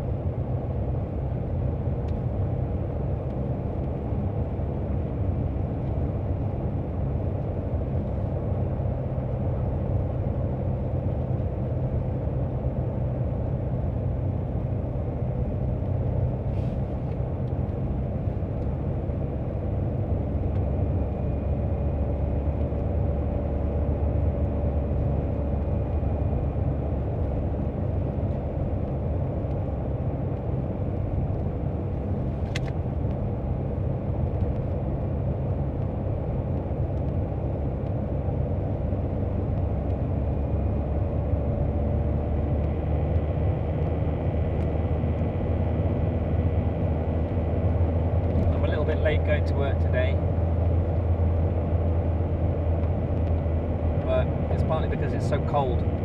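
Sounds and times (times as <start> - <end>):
car engine and tyre noise: 0.0 - 56.0.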